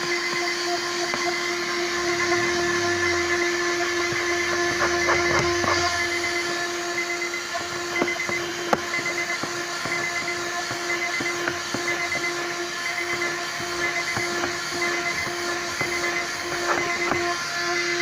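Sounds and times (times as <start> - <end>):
handheld vacuum cleaner whining: 0.0 - 18.0.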